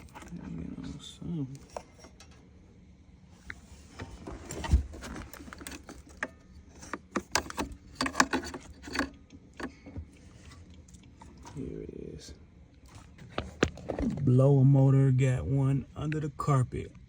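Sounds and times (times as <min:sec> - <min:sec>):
plastic parts clicking and rattling: 0:04.5 - 0:10.0.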